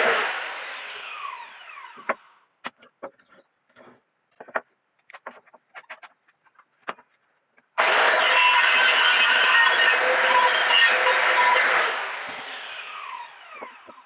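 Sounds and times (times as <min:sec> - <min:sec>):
power tool spinning down: 0:00.0 - 0:02.1, 0:07.8 - 0:14.0
loud tool noise: 0:00.0 - 0:02.3, 0:07.8 - 0:14.0.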